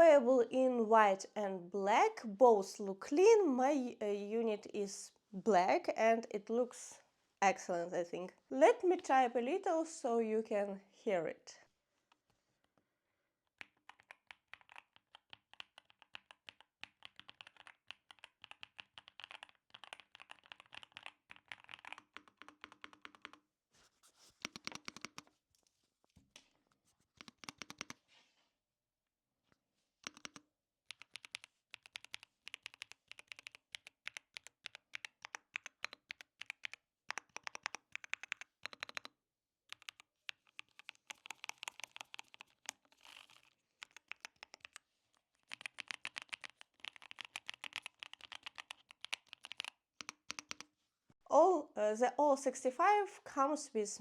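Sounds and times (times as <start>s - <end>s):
typing on mechanical keyboard: 13.6s - 23.4s, 24.4s - 25.3s, 27.2s - 28.0s, 30.0s - 50.7s.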